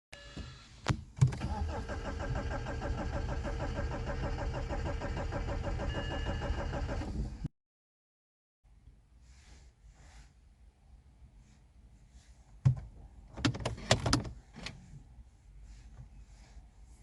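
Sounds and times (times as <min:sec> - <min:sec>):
diesel engine starting and idling: 0:01.2 - 0:07.5.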